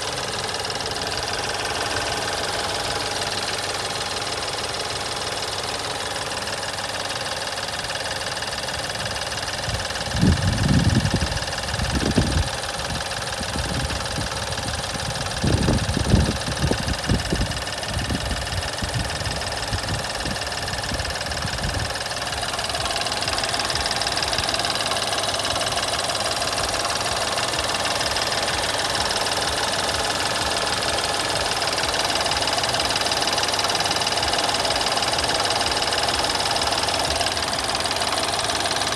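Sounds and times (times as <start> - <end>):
car engine idling with rattle: 0.0 - 38.9.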